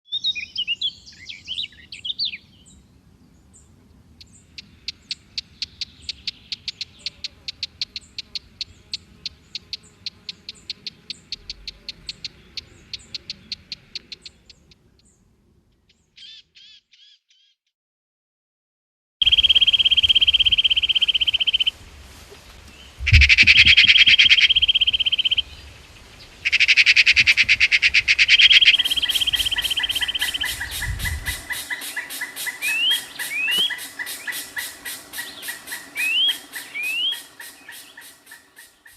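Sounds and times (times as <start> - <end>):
birds chirping: 0.1 - 17.5, 19.2 - 21.7, 22.7 - 38.9
short repeated bird calls: 15.8 - 17.6, 19.2 - 21.7, 22.9 - 38.9
high bird trills: 19.2 - 21.7, 23.1 - 25.5, 26.3 - 38.9.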